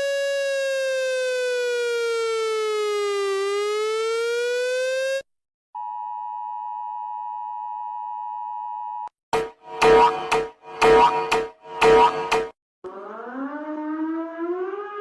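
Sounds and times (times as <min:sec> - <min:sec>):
electronic siren wail: 0:00.0 - 0:05.3, 0:09.4 - 0:15.0
harsh alarm blasts: 0:09.4 - 0:13.6.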